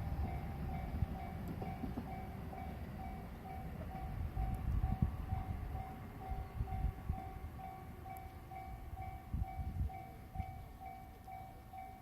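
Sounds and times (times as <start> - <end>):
level crossing warning bell: 0.0 - 12.0.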